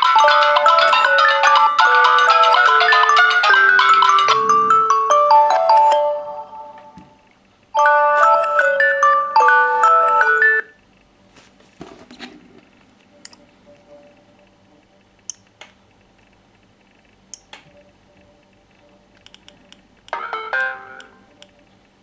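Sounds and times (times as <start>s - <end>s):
phone ringtone melody: 0.0s - 7.0s, 7.8s - 10.7s, 20.2s - 21.2s.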